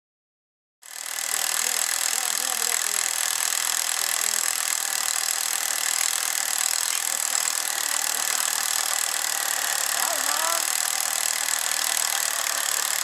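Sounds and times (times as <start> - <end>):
faint voices: 9.5 - 11.2.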